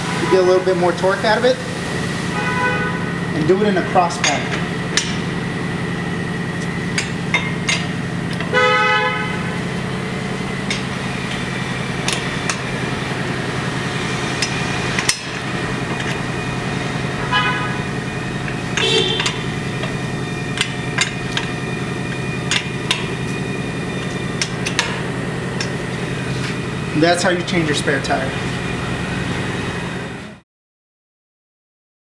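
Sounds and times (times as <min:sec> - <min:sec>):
steady hum: 0:00.0 - 0:30.4
lug wrench clinking on nuts: 0:04.2 - 0:05.5, 0:06.6 - 0:26.9.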